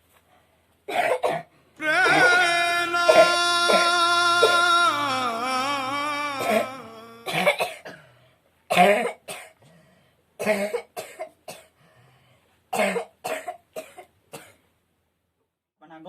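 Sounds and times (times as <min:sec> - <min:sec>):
person coughing: 0:00.9 - 0:08.1, 0:08.7 - 0:09.6, 0:10.4 - 0:11.7.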